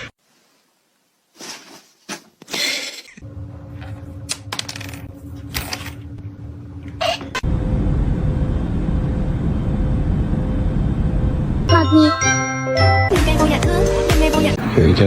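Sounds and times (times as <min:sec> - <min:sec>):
steady low hum: 0:03.2 - 0:11.7.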